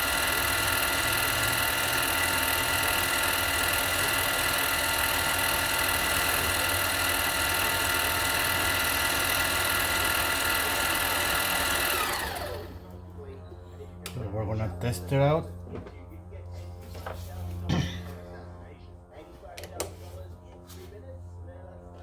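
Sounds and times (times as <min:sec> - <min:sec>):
lathe motor whine: 0:00.0 - 0:13.2.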